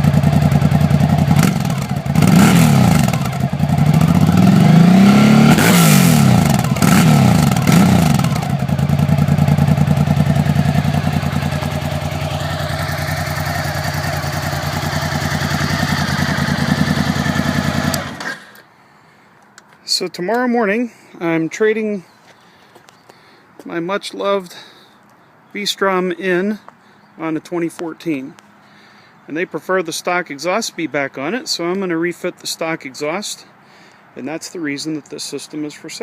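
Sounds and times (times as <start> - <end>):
motorcycle engine revving and idling: 0.0 - 18.6.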